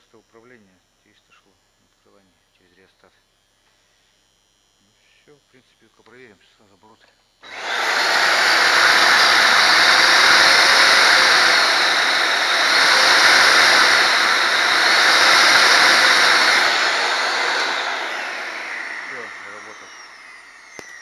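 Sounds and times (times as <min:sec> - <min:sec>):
vacuum cleaner motor running: 0:07.4 - 0:21.0.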